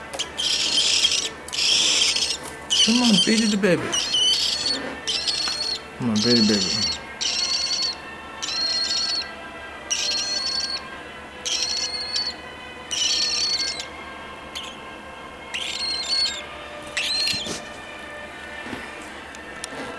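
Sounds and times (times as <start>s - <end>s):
cockatiel chick begging calls: 0.2s - 9.3s, 9.9s - 10.8s, 11.4s - 13.9s, 14.6s - 14.8s, 15.5s - 17.6s.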